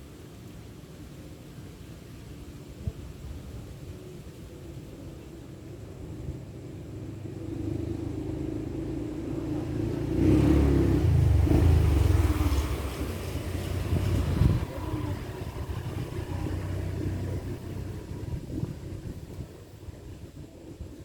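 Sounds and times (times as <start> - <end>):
vehicle engine passing by: 6.4 - 21.0.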